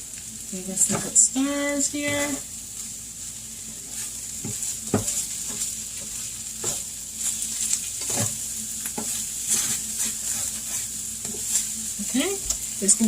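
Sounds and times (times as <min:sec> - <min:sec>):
meat sizzling in a frying pan: 0:00.0 - 0:13.0
utensil scraping a pan: 0:03.8 - 0:08.4, 0:09.0 - 0:12.3.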